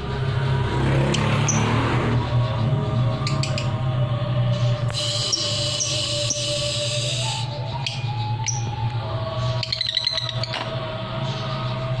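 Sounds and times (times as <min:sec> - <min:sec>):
lovebird chirping: 0:05.0 - 0:08.8, 0:09.4 - 0:10.6.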